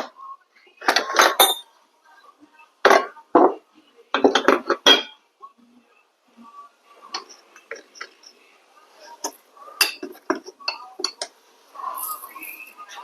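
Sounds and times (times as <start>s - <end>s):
metal parts and tools clanking: 0.8s - 1.7s.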